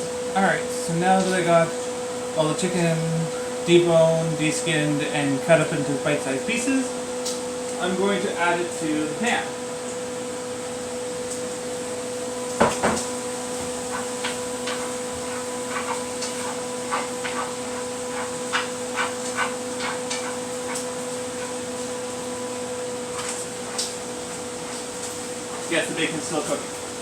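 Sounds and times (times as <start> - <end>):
steady hum: 0.0 - 27.0
meat and utensil knocking on pan: 12.6 - 21.6.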